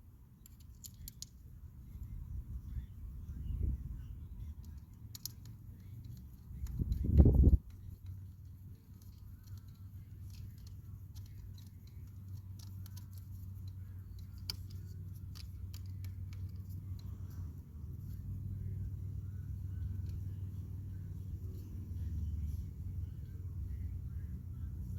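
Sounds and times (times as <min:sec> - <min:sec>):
steady low rumble: 0:00.9 - 0:24.9
screwdriver clicks and ticks: 0:04.6 - 0:08.2, 0:08.9 - 0:17.4.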